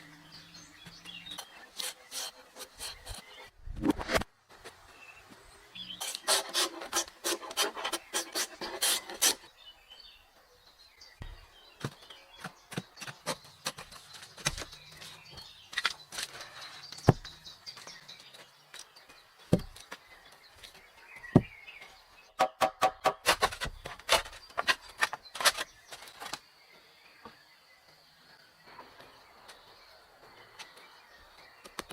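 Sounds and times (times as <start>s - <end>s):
wood being scraped by hand: 1.1s - 3.5s, 6.0s - 9.5s, 23.1s - 26.3s.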